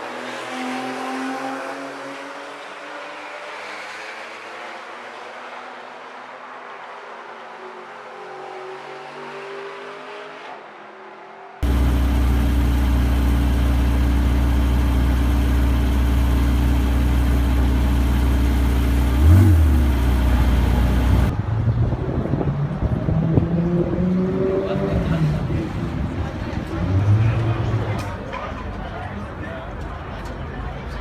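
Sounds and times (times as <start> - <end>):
sports car engine at speed: 0.0 - 28.2.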